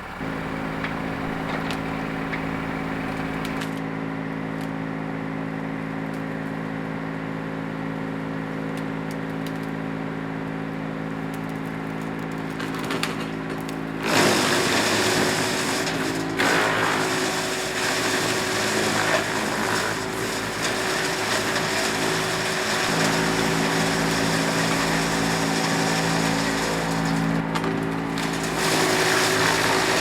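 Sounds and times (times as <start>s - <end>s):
motor humming: 0.0s - 3.6s.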